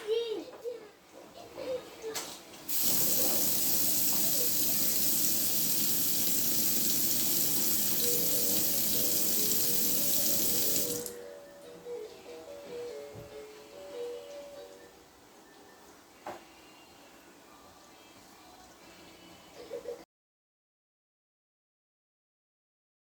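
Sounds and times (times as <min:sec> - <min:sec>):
tap water running into sink: 0:02.7 - 0:11.2.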